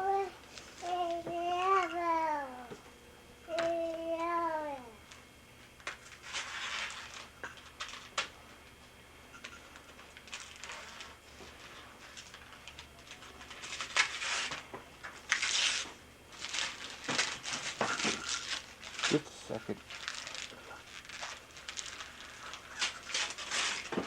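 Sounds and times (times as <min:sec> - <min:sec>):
wrapping paper rustling and tearing: 0:06.0 - 0:08.3, 0:10.0 - 0:24.0.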